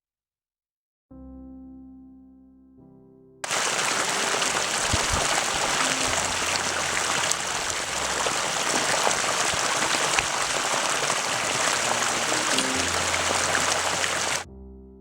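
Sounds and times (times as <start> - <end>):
water rushing and splashing: 3.4 - 14.5.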